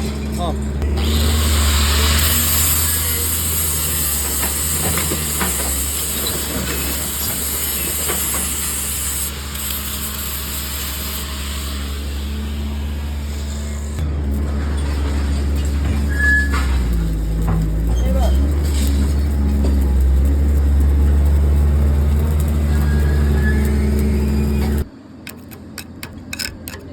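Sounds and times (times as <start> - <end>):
arc welding hissing: 0.8 - 14.5, 16.0 - 25.6
low engine hum: 13.0 - 26.9.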